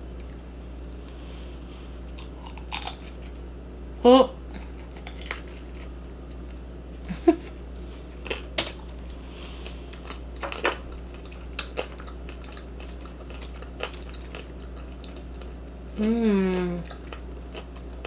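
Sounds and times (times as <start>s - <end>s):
faint low hum: 0.0s - 18.0s
crunchy chewing: 1.9s - 3.5s, 4.6s - 6.7s, 7.4s - 15.8s, 16.8s - 18.0s.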